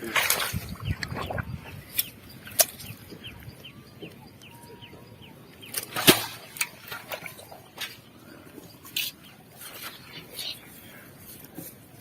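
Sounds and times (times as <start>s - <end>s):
sharp smacks: 5.7s - 6.7s.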